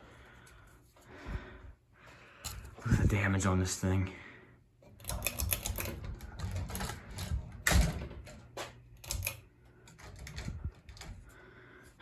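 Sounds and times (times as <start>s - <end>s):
ceiling fan knocking and rattling: 5.1s - 11.4s.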